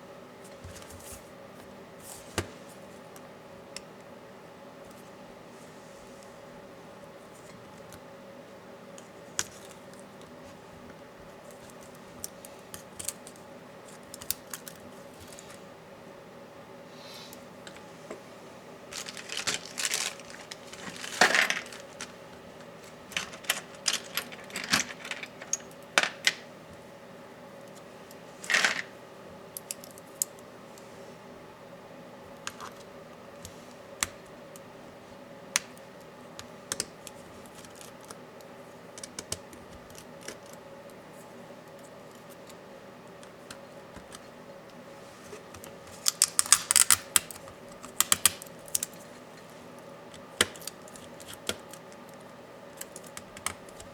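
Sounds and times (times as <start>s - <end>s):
clicks and clatter of small parts: 18.9s - 22.2s, 22.8s - 26.4s, 28.4s - 28.9s.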